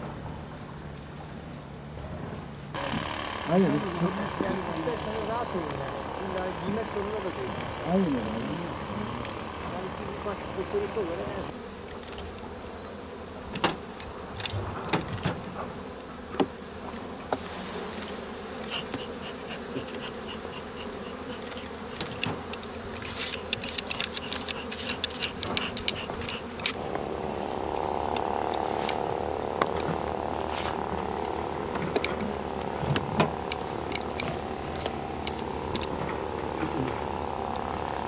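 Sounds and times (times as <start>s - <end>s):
honeybees buzzing: 0.0s - 38.0s
sharp clicks and knocks: 21.4s - 29.0s, 30.6s - 38.0s.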